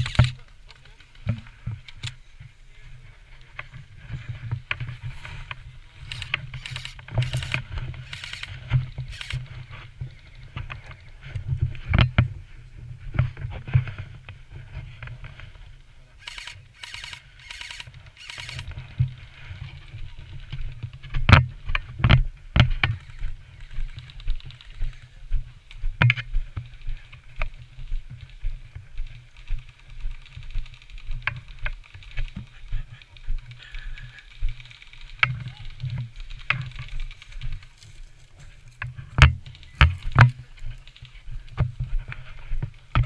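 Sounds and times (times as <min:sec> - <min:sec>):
walking footsteps: 0:00.0 - 0:43.0
gear rubbing on camera: 0:03.4 - 0:12.2, 0:16.2 - 0:20.9
rapid high clicking: 0:04.7 - 0:09.6, 0:16.2 - 0:18.9
sharp cracks: 0:05.5 - 0:09.5, 0:16.2 - 0:18.8.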